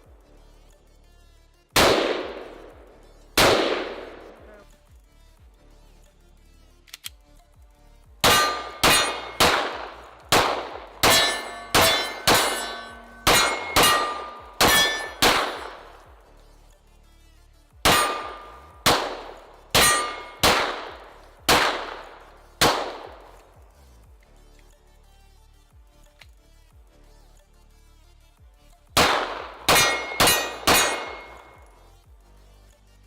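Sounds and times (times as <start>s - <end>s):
bullets clanging on steel targets: 8.2s - 16.1s, 17.9s - 23.5s, 29.0s - 31.8s.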